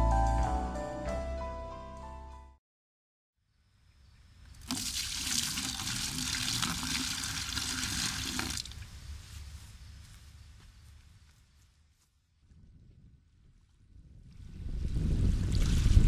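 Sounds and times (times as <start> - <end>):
running water rushing: 4.6 - 8.8.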